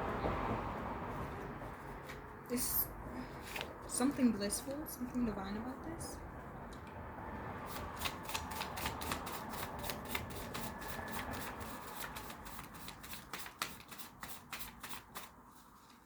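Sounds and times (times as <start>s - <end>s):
cards being shuffled: 7.9s - 16.0s.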